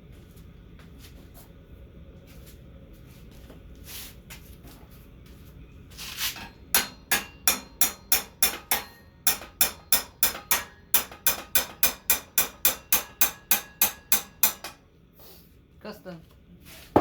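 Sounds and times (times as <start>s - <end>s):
hammering: 6.4s - 14.8s.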